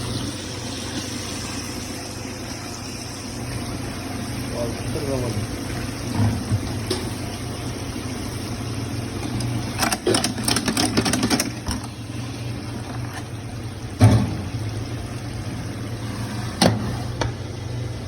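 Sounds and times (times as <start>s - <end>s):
low machine hum: 0.0s - 18.0s
clattering clicks and knocks: 9.2s - 12.0s.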